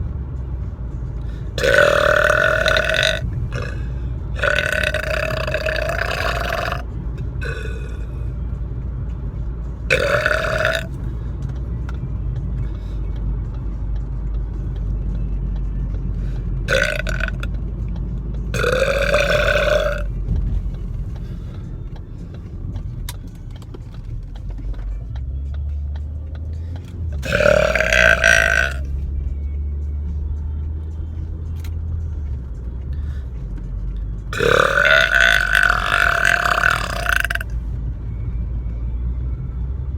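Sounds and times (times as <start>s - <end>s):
car rumble: 0.0s - 39.9s
man burping: 1.6s - 8.1s, 9.9s - 10.9s, 16.7s - 17.5s, 18.6s - 20.1s, 27.2s - 28.9s, 34.4s - 37.4s.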